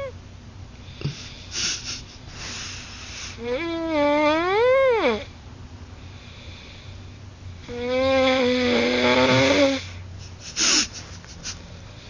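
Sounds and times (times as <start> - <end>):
baby snoring: 1.6 - 5.3, 7.6 - 10.0.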